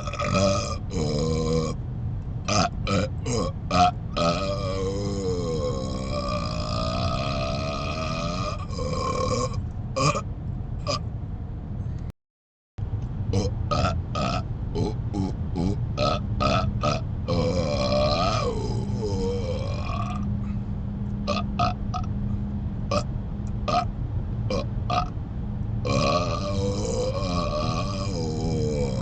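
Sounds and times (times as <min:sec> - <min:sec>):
man burping: 0:00.0 - 0:01.8, 0:02.5 - 0:10.2, 0:10.8 - 0:11.0, 0:13.3 - 0:20.3, 0:21.3 - 0:22.1, 0:23.7 - 0:23.9, 0:24.5 - 0:25.1, 0:25.8 - 0:29.0
moving car noise: 0:00.0 - 0:12.1, 0:12.8 - 0:29.0.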